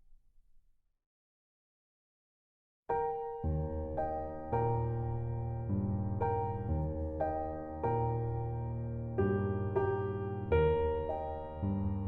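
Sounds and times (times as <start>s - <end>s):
soft piano music: 2.9s - 12.0s.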